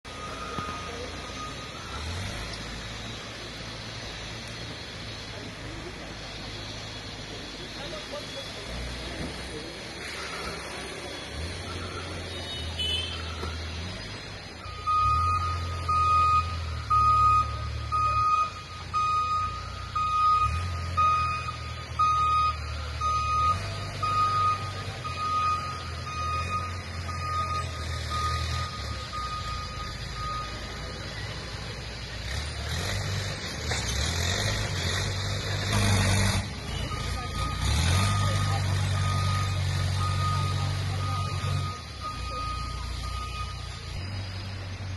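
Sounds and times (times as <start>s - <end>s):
single-tone electronic beeping: 0.1s - 2.9s, 14.6s - 31.2s, 36.7s - 44.8s.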